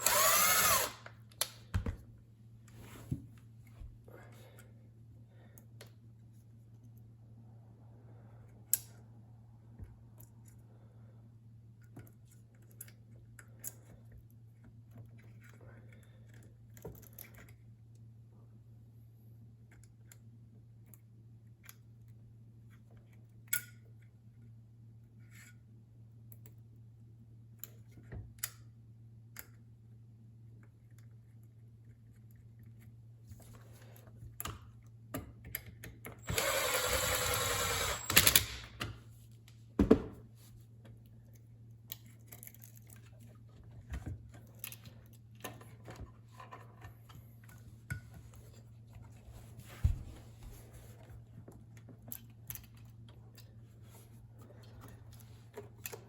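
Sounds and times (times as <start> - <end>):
power drill running: 0.0 - 1.1, 36.2 - 38.6.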